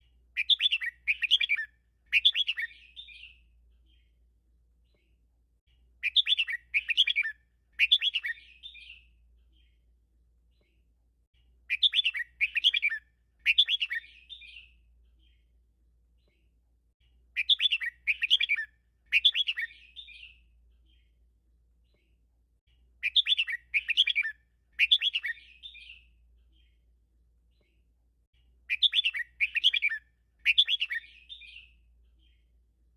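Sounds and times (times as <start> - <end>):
bulbul singing: 0.4 - 4.1, 6.0 - 9.8, 11.7 - 15.4, 17.4 - 21.1, 23.0 - 26.8, 28.7 - 32.4.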